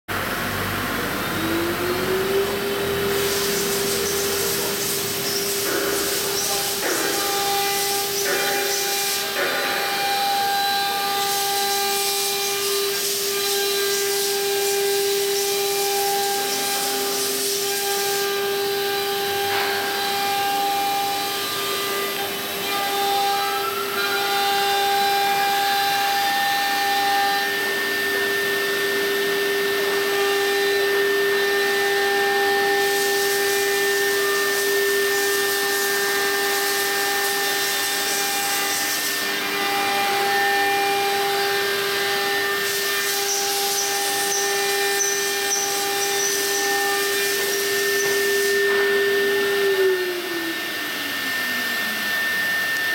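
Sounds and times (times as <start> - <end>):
router spindles whining: 0.1 - 52.9
hissing cutting noise: 1.2 - 19.6, 32.1 - 50.1.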